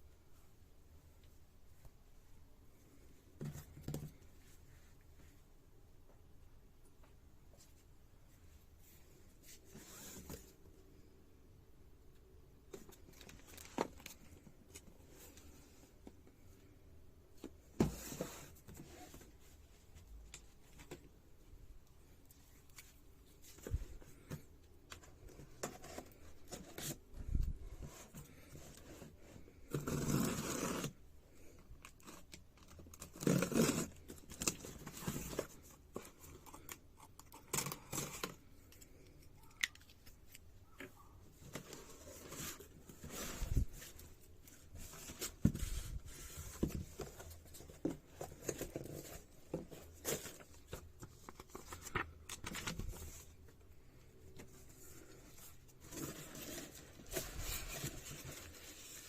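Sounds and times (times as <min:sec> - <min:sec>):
cardboard cutting and tearing: 0:29.7 - 0:31.0, 0:33.0 - 0:35.5.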